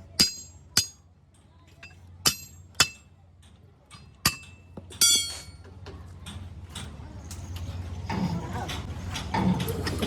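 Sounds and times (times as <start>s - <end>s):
hammer striking steel: 0.0s - 1.1s, 1.8s - 3.1s, 4.2s - 5.6s.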